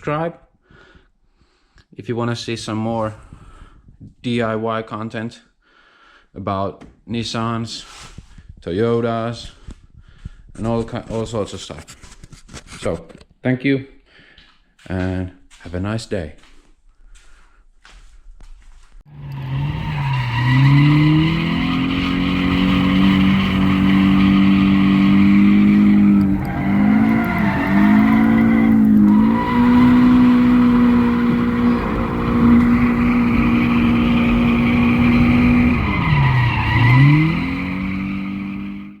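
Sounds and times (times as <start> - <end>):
car engine revving: 19.1 - 39.0
tyres squealing: 19.3 - 38.9.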